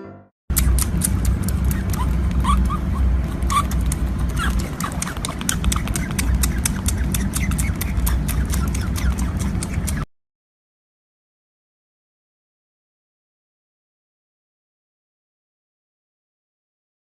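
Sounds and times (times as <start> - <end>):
sharp clicks: 0.5 - 10.0
steady low rumble: 0.5 - 10.1
small animal squeaking: 0.6 - 10.1.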